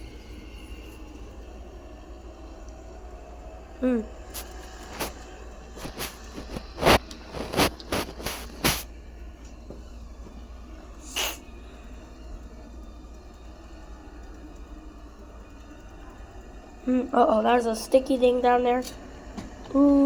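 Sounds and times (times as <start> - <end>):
short hissing scrape: 4.2 - 8.9, 11.0 - 11.5.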